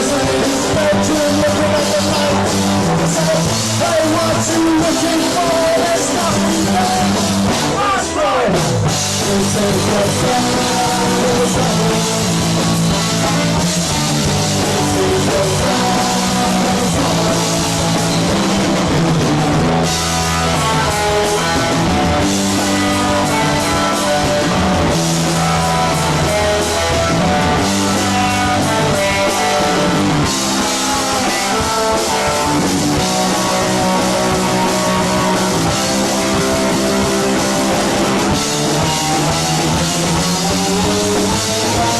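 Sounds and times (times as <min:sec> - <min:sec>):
person singing: 0:00.0 - 0:13.6, 0:14.5 - 0:18.5
punk rock band playing live: 0:00.0 - 0:41.9.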